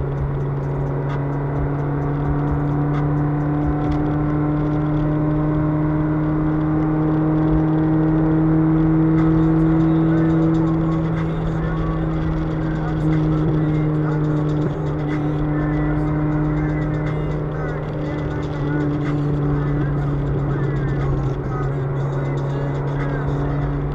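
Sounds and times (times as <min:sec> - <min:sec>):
car engine through broken exhaust: 0:00.0 - 0:23.9.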